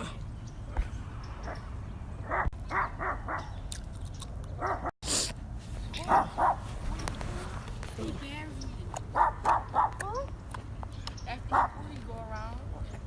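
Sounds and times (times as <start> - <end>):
dog barking: 2.2 - 3.6, 4.6 - 4.9, 6.0 - 6.7, 9.1 - 10.3, 11.5 - 11.8.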